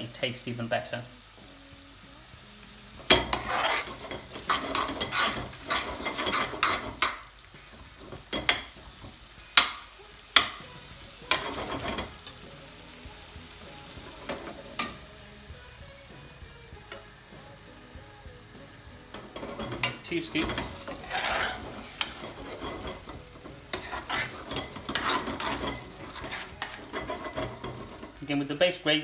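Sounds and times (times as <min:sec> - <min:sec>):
food sizzling: 0:00.0 - 0:29.0
utensil scraping a pan: 0:02.9 - 0:28.7
sharp taps on pan: 0:08.3 - 0:10.7.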